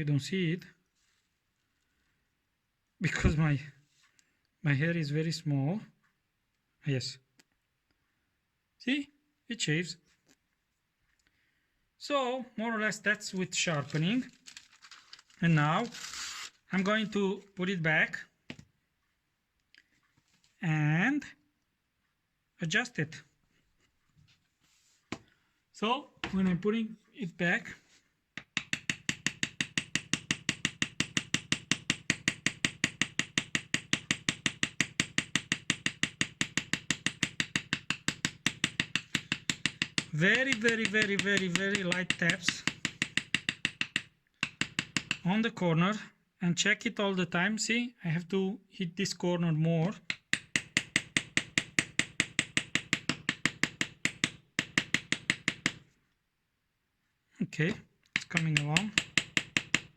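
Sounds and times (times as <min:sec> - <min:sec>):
small hammer tapping plane blade: 0:28.4 - 0:45.3, 0:50.0 - 0:55.8, 0:57.7 - 0:59.9.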